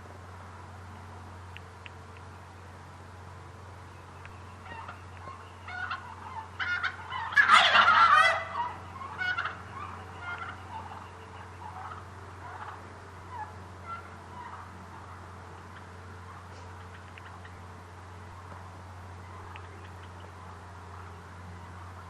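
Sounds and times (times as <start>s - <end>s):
turkey gobbling: 4.5s - 17.6s, 18.3s - 22.0s.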